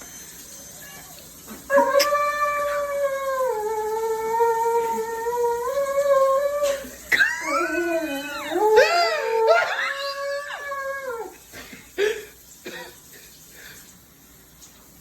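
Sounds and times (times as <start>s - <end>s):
dog howling: 1.7s - 11.4s
dog whining: 1.7s - 11.4s.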